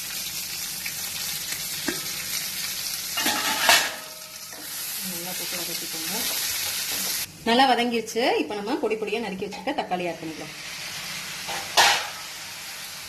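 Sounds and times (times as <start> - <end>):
onions sizzling in oil: 0.0 - 13.0.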